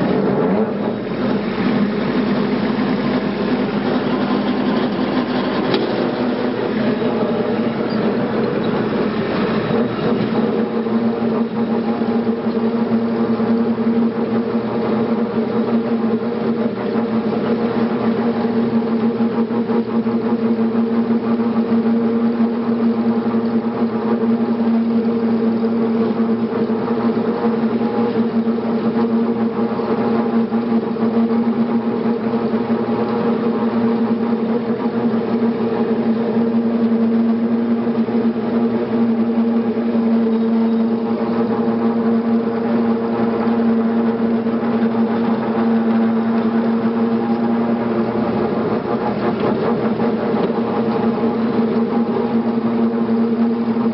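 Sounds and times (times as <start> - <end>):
tractor engine running: 0.0 - 53.9.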